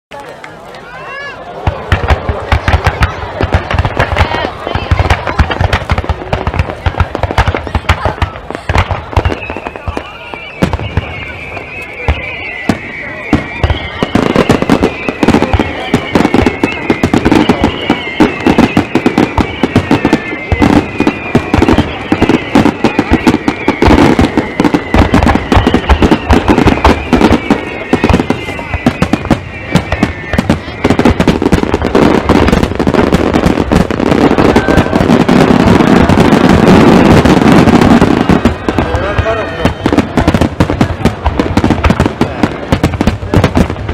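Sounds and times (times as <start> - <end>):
fireworks bangs and crackles: 0.1 - 43.9
high wavering whistle: 9.2 - 32.7.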